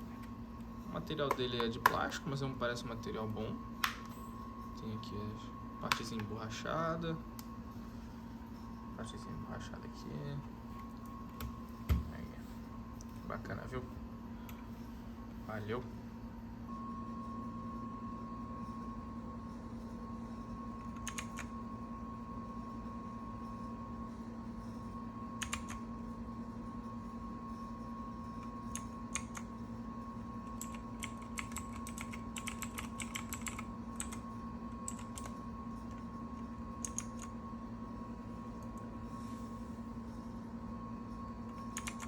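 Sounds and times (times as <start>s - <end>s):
faint high whine: 0.0s - 42.0s
mechanical keyboard clicks: 21.0s - 21.5s, 25.4s - 25.8s, 30.6s - 34.2s, 34.9s - 35.3s, 36.8s - 37.3s, 41.8s - 42.0s.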